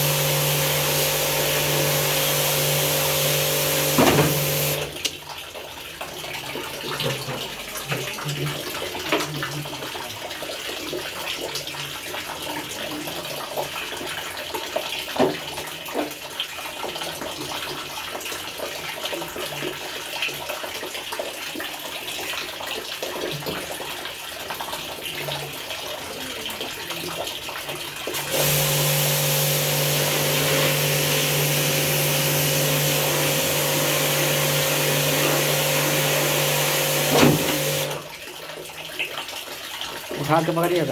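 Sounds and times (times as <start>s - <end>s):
hiss of water spray: 0.0s - 4.9s, 28.2s - 38.0s
water pump motor hum: 0.0s - 5.3s, 28.0s - 38.4s
water running and splashing: 0.0s - 40.9s.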